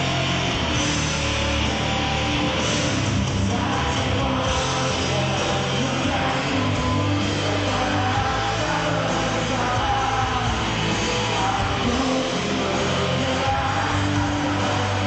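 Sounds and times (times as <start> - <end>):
rock band playing: 0.0 - 15.0
person singing: 3.4 - 15.0.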